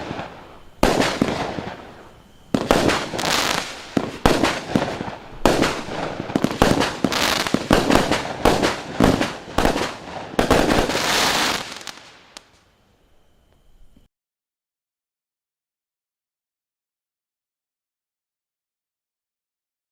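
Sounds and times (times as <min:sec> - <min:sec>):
fireworks crackling bursts: 0:00.0 - 0:12.7.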